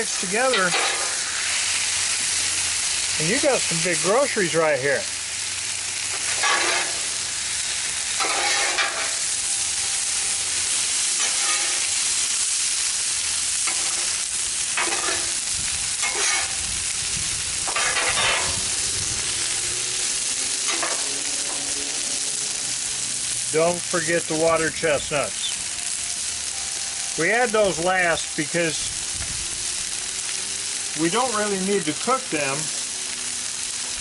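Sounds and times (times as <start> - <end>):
spatulas scraping hot steel: 0.0 - 4.5, 5.7 - 12.8, 13.4 - 25.5
food sizzling on a griddle: 0.0 - 34.0.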